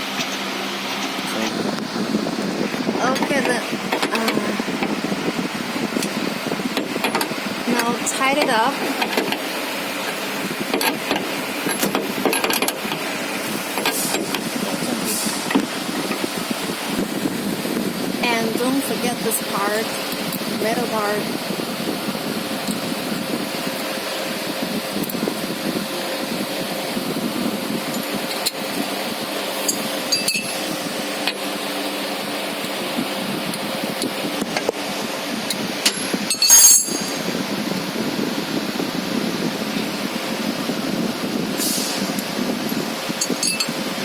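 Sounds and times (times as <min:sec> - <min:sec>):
steady background noise: 0:00.0 - 0:44.0
steady mechanical hum: 0:00.0 - 0:44.0
light metallic clinks: 0:36.3 - 0:37.2.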